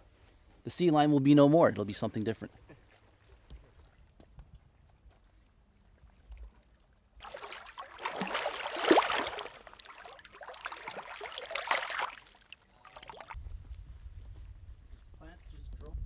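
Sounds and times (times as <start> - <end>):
water splashing and sloshing: 5.9 - 13.4.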